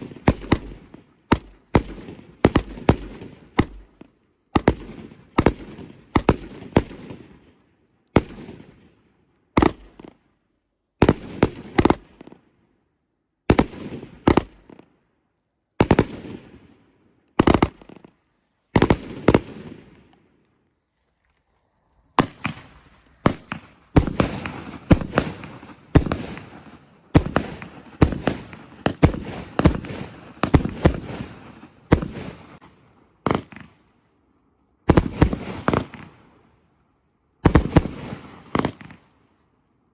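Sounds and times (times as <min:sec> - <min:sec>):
firework bangs with echo: 0:04.6 - 0:07.3, 0:22.2 - 0:32.6, 0:34.9 - 0:36.3.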